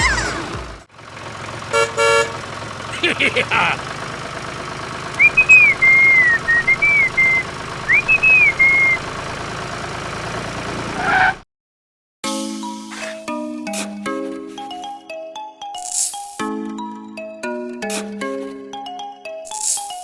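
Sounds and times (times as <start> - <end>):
music: 0.0 - 0.9, 12.2 - 20.0
engine idling: 0.0 - 11.4
person whistling a tune: 5.2 - 9.1.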